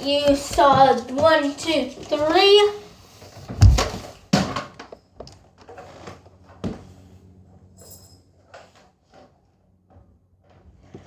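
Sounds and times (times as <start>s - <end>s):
loud thump: 3.5s - 4.7s.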